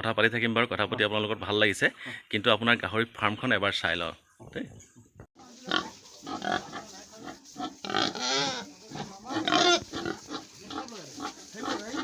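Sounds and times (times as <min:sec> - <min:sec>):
pigs calling high: 0:05.5 - 0:12.0
pigs grunting: 0:05.5 - 0:12.0.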